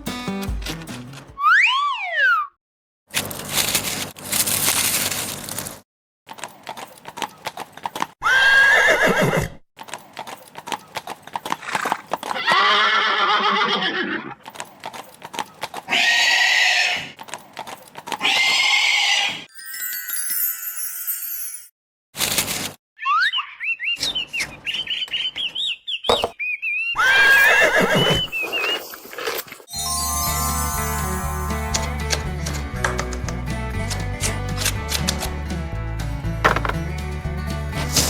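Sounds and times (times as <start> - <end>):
horse neighing and whinnying: 8.2 - 9.6, 11.6 - 14.4, 15.9 - 17.1, 18.2 - 19.4, 27.0 - 28.8.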